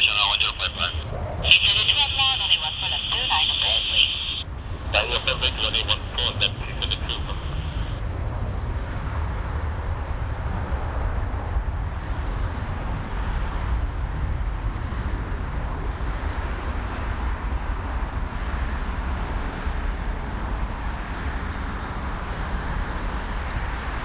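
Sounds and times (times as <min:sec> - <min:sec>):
gusty wind buffeting microphone: 0:00.0 - 0:24.0.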